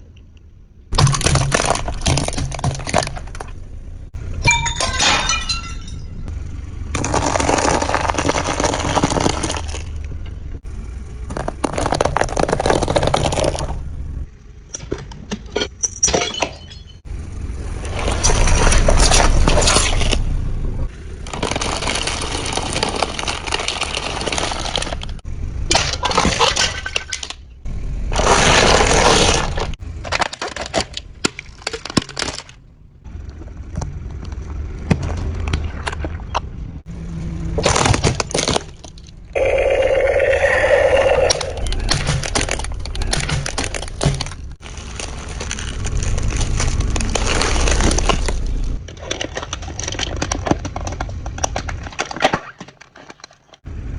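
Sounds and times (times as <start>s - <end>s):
objects cracking under car tyres: 0.9s - 17.1s, 17.7s - 36.9s, 37.5s - 39.4s, 41.4s - 53.7s
squeal-like tone: 39.4s - 42.0s.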